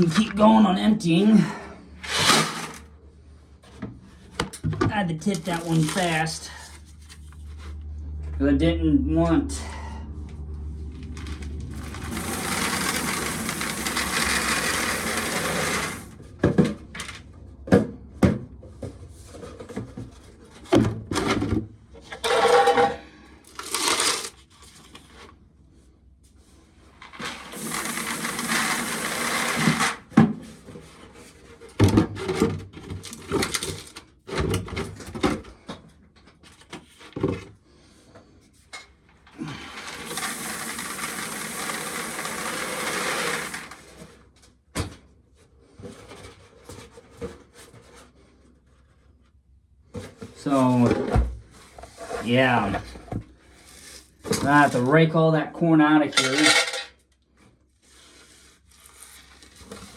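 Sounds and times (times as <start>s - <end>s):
pail knocking and rattling: 11.2s - 24.3s, 27.1s - 30.6s, 56.1s - 57.0s
corn kernels pouring: 11.7s - 16.1s, 27.2s - 30.0s, 39.4s - 43.8s.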